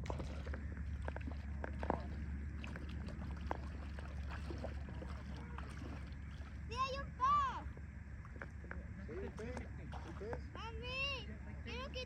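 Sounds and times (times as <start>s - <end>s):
water splashes and drips: 0.0s - 6.7s, 9.3s - 10.4s
steady low hum: 0.0s - 12.0s.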